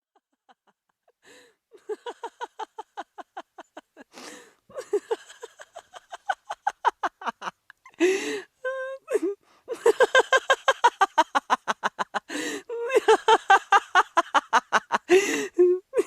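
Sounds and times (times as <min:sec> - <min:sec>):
woman laughing hard: 0:00.1 - 0:16.0
wheezy in-breath: 0:04.1 - 0:04.6.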